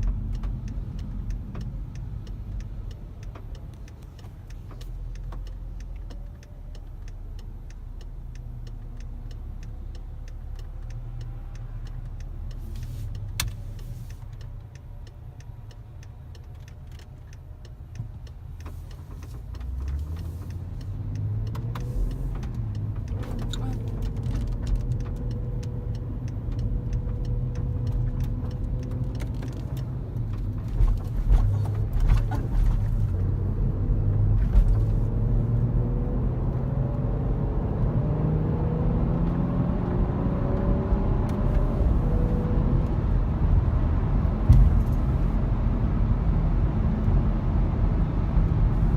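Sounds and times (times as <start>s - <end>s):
regular ticking: 0.0s - 36.9s
car engine accelerating: 0.0s - 48.9s
sudden thumps: 44.4s - 45.4s.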